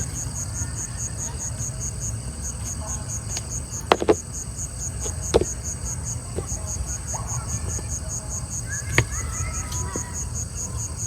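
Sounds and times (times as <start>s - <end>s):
insects chirping: 0.0s - 11.0s
sharp knocks: 3.9s - 4.3s, 5.0s - 5.6s.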